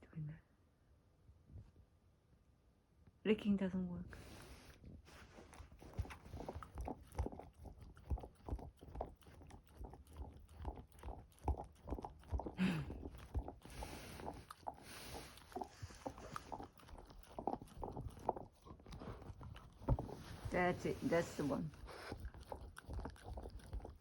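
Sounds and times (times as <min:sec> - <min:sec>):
dog chewing rubber toy: 0:05.1 - 0:24.0.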